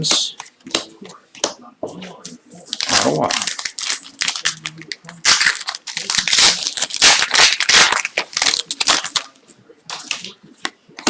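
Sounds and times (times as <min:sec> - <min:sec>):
foil wrapper crinkling: 0:02.7 - 0:10.3.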